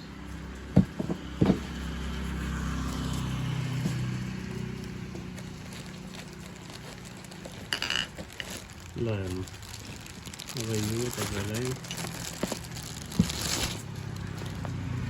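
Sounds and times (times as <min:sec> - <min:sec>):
vehicle engine passing: 0:00.0 - 0:07.9, 0:11.2 - 0:15.0.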